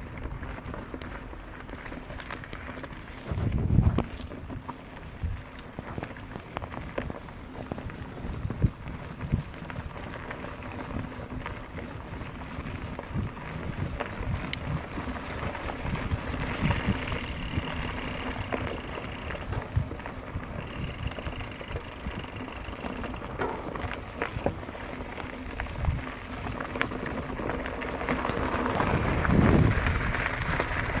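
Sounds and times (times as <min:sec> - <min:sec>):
bike rattling over bumps: 0:00.0 - 0:31.0
bike tyres crunching on dirt: 0:00.0 - 0:31.0
wind on microphone: 0:03.2 - 0:04.2, 0:28.7 - 0:31.0.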